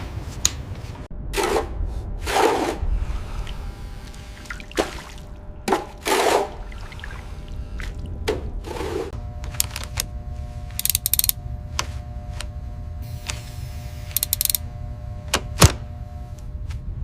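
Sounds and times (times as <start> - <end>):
steady hum: 6.6 - 17.0
machinery clicking and ratcheting: 9.5 - 10.1, 10.8 - 11.4, 14.1 - 14.6.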